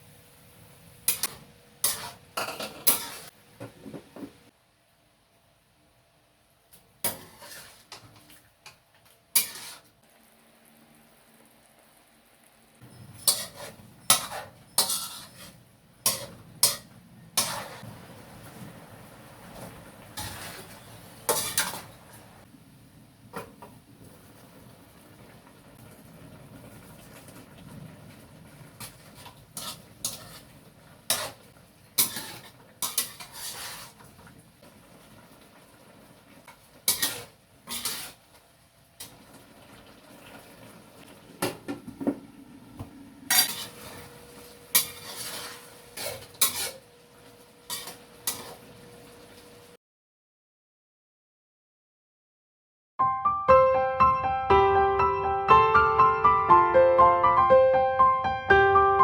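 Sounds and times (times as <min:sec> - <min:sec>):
utensils clinking and scraping cookware: 0:01.1 - 0:03.4, 0:07.0 - 0:09.9, 0:12.8 - 0:17.9, 0:19.5 - 0:22.4, 0:28.7 - 0:34.4, 0:36.4 - 0:38.4, 0:43.3 - 0:49.2.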